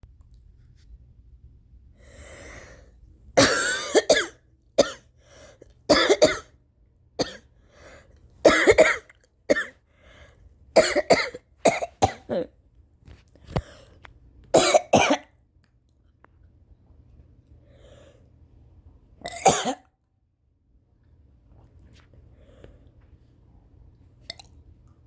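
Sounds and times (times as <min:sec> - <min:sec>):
woman coughing: 0:03.4 - 0:05.0, 0:05.9 - 0:06.5, 0:07.2 - 0:07.4, 0:08.5 - 0:09.8, 0:10.8 - 0:12.5, 0:14.6 - 0:15.3, 0:19.3 - 0:19.8.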